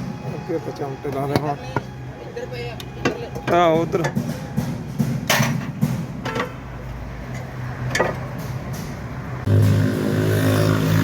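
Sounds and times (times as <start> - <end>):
deep steady hum: 9.4 - 11.0.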